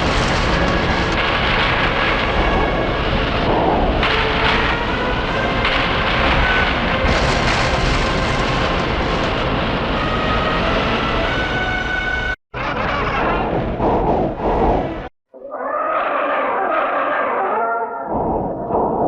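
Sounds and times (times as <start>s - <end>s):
loud rushing wind: 0.0s - 12.0s, 13.2s - 15.1s.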